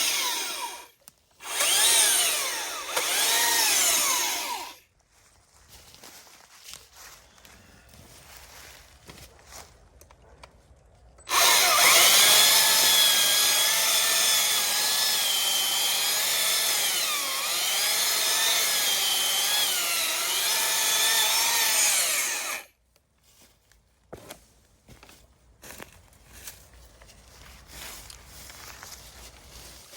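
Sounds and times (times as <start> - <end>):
electric chainsaw cutting wood: 0.0 - 4.8, 11.3 - 22.7.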